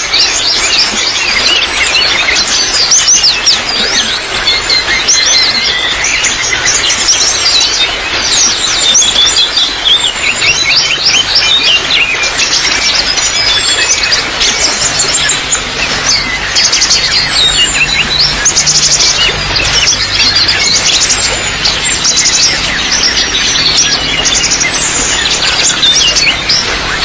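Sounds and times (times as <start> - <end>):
small birds chirping: 0.0 - 27.0
water trickling: 0.0 - 27.0.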